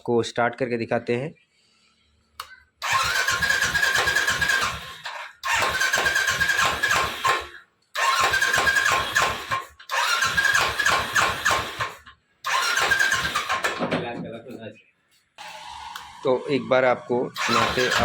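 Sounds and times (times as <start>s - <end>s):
motorcycle electric starter cranking: 2.8s - 13.9s, 15.4s - 18.0s.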